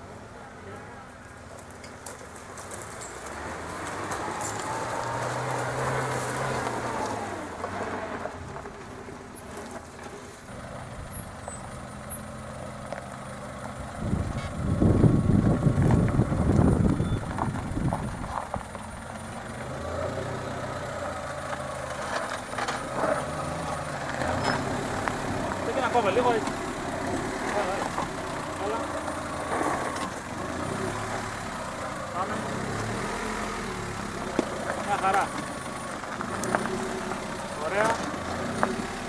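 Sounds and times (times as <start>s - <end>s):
off-road vehicle engine running: 0.0s - 39.0s.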